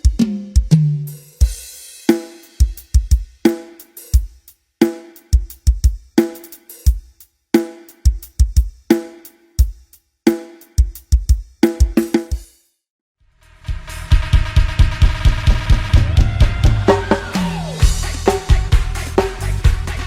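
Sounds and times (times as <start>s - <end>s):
ringing pitched drum hits: 13.4s - 18.7s
cymbal wash: 13.4s - 19.5s.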